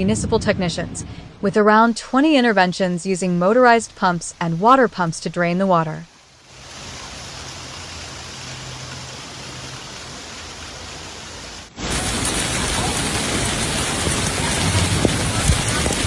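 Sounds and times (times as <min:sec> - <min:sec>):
running water: 0:01.4 - 0:16.0
heavy rain: 0:06.0 - 0:16.0.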